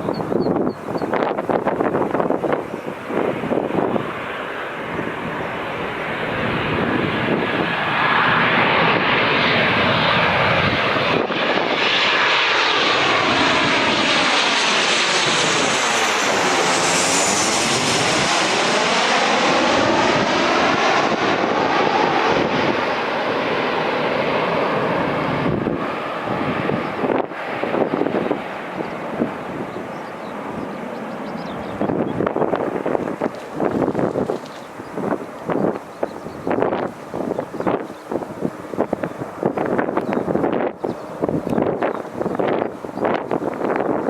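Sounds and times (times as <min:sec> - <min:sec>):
jet airliner engines passing: 0:00.0 - 0:44.0.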